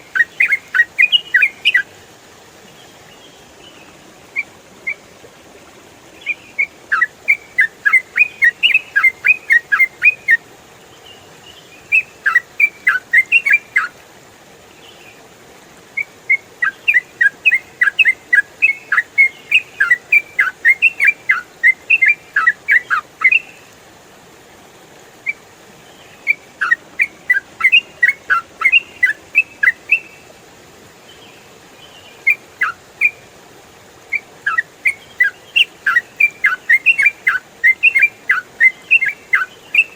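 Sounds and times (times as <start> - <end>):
bird singing chattering whistles: 0.0 - 1.9, 6.2 - 10.4, 11.9 - 13.9, 16.0 - 23.6, 26.2 - 30.2, 32.2 - 33.2, 34.1 - 39.9.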